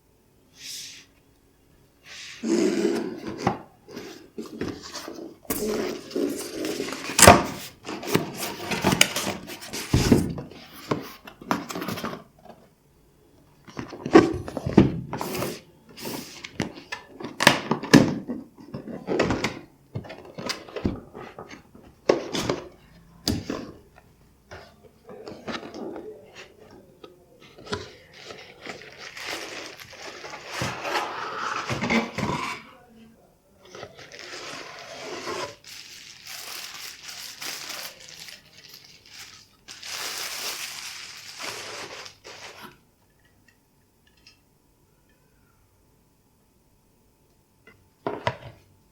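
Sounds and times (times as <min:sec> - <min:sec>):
box and packaging handling noise: 0:02.8 - 0:12.7, 0:13.7 - 0:23.9, 0:24.5 - 0:32.7, 0:33.6 - 0:42.8.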